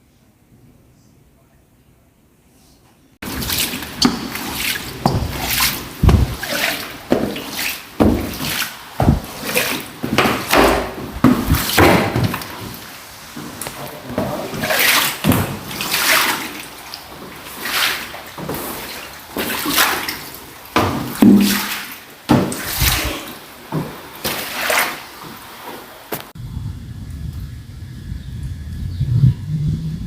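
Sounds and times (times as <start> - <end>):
strong wind: 6.0 - 6.4, 26.4 - 30.0.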